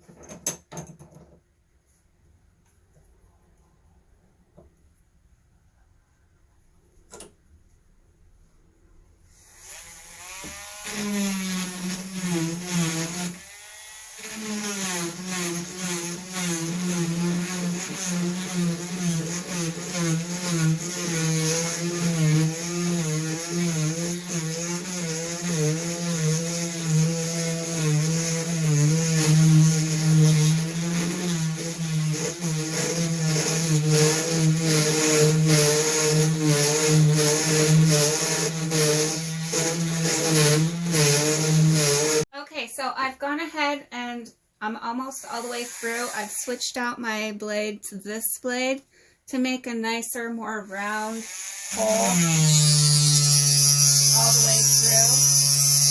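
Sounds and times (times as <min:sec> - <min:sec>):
rotary tool grinding stone: 0:09.5 - 0:42.3, 0:51.1 - 0:55.9.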